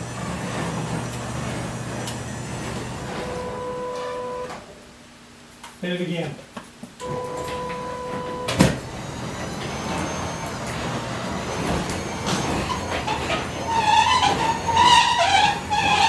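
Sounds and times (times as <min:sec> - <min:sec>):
garage door motor humming: 0:00.0 - 0:04.8, 0:07.0 - 0:16.0
wavering high squeal: 0:07.8 - 0:16.0.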